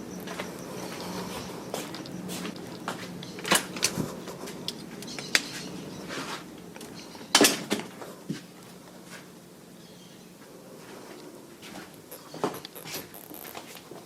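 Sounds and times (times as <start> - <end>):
electric fan motor hum: 0.0 - 6.8
sharp clicks and knocks: 12.1 - 14.0.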